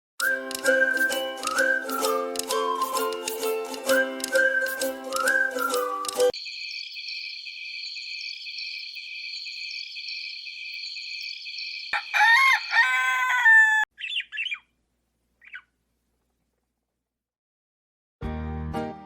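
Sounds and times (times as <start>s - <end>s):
birds chirping: 6.4s - 14.8s, 15.4s - 15.8s
rooster crowing: 11.9s - 13.9s.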